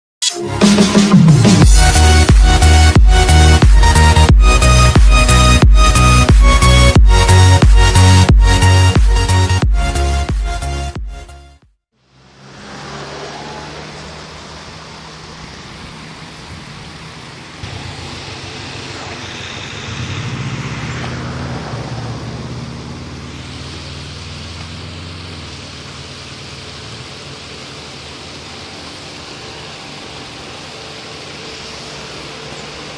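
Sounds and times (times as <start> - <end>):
propeller aircraft engine drone: 0.5 - 10.9, 12.0 - 32.9.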